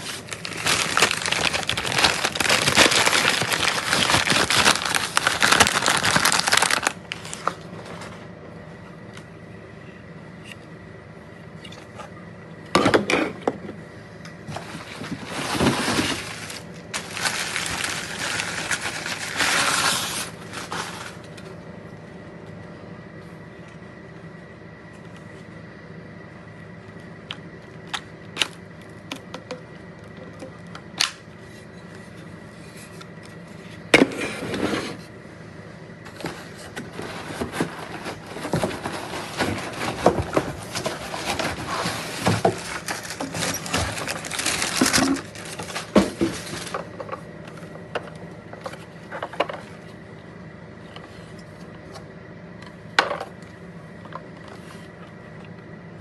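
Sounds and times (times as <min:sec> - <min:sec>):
crinkly rustling: 0:00.0 - 0:08.2, 0:14.5 - 0:21.4, 0:36.1 - 0:47.0.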